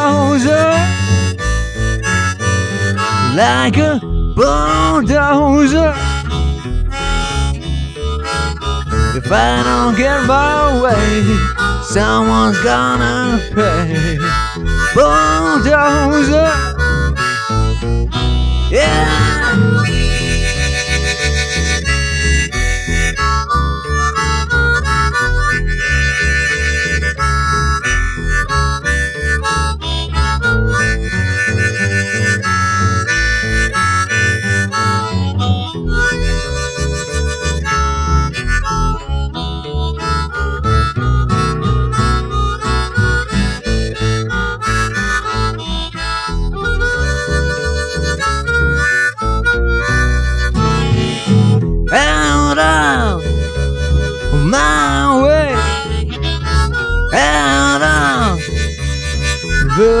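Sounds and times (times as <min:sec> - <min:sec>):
pulsing bass beat: 0:00.0 - 0:28.8
blues-rock instrumental: 0:00.0 - 1:00.0
guitar: 0:00.0 - 1:00.0
lead melody bending notes: 0:00.0 - 1:00.0.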